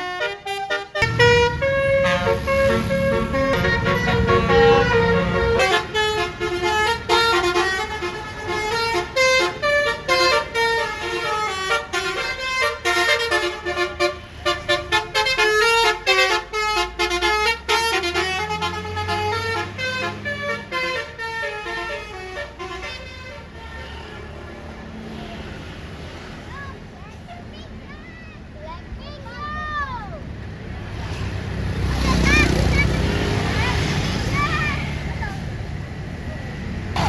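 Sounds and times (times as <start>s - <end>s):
bus air horn melody: 0.0s - 24.4s
bus engine running: 0.0s - 37.0s.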